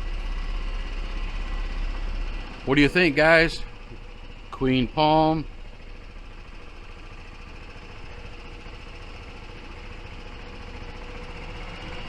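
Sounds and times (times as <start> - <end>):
golf cart motor humming: 0.0 - 12.0.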